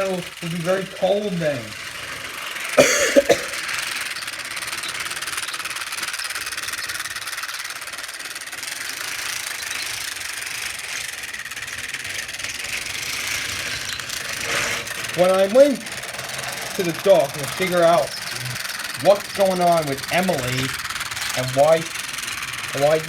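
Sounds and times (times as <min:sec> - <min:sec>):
toy train whirring rattle: 0:00.0 - 0:23.0.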